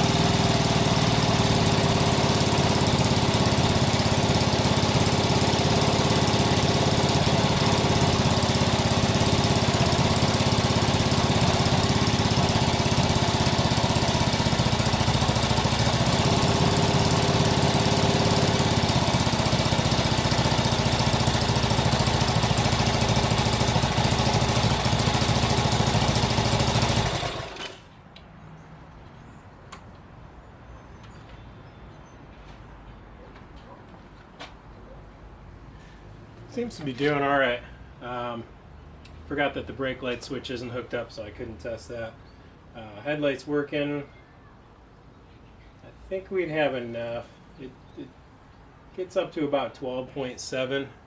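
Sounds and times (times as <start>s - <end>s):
motorcycle engine running: 0.0s - 27.8s.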